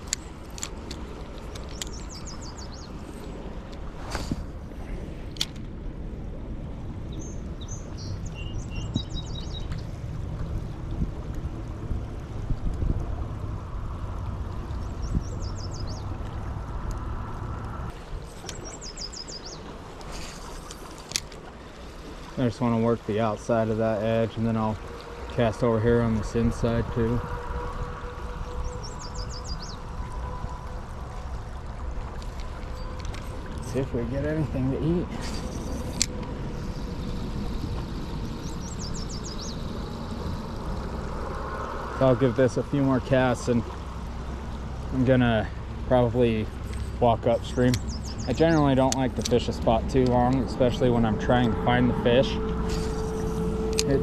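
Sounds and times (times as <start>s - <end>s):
river rushing: 15.6s - 54.0s
low rumble: 23.7s - 54.0s
bird singing high notes: 28.3s - 30.5s, 50.5s - 54.0s
high bird chirps: 28.4s - 29.8s, 52.4s - 53.7s.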